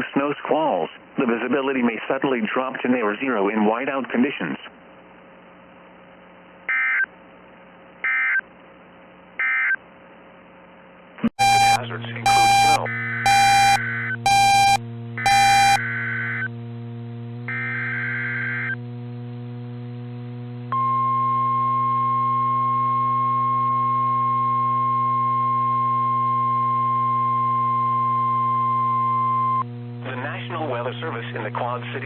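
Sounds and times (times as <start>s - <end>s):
sharp beeps: 11.4s - 15.8s
steady attention tone: 11.4s - 15.9s
buzzing data bursts: 11.4s - 16.5s
low hum: 11.4s - 17.5s.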